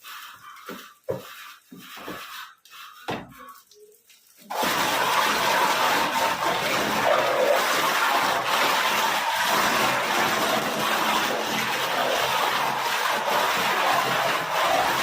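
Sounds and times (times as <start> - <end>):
water pump running: 0.0 - 15.0
rush of water: 4.5 - 15.0.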